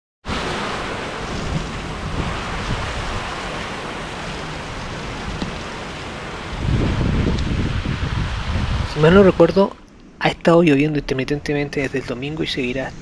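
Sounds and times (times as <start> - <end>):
heavy rain falling: 0.3 - 9.8
wind buffeting microphone: 0.3 - 13.0.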